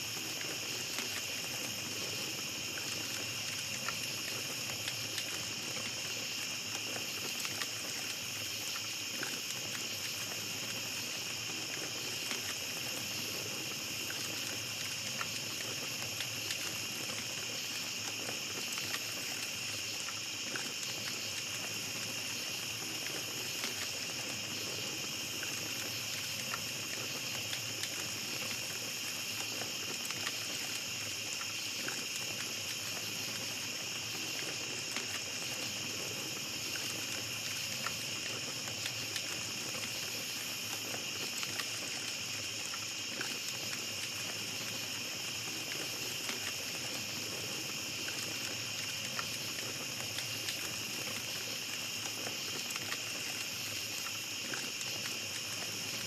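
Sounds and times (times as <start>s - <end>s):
campfire crackling: 0.0s - 56.0s
crickets trilling: 0.0s - 56.0s.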